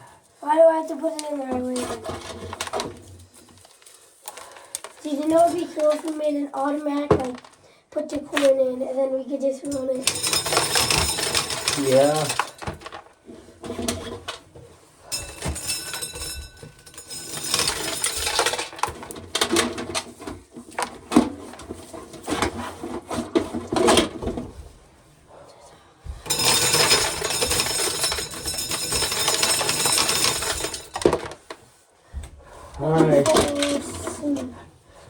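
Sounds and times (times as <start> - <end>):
corn sheller rattling: 9.7 - 13.1, 15.1 - 20.1, 26.3 - 31.5
corn kernels clattering: 10.0 - 13.0, 15.2 - 19.1, 26.3 - 31.3.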